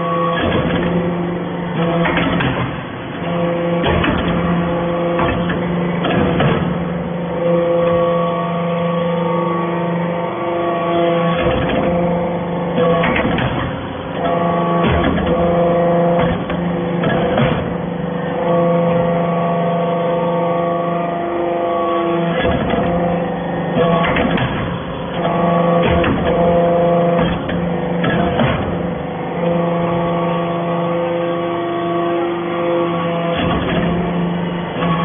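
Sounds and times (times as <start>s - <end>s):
baler machine hum: 0.0s - 35.0s
hydraulic whine: 0.0s - 35.0s.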